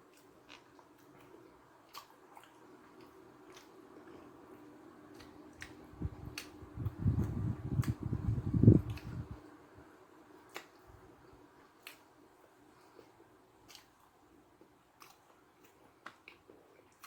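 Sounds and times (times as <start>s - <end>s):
squishy chewing: 0.0s - 8.1s, 8.8s - 9.3s
wet lip smacks and clicks: 5.1s - 8.1s, 8.8s - 9.3s, 10.5s - 10.8s, 11.8s - 12.1s.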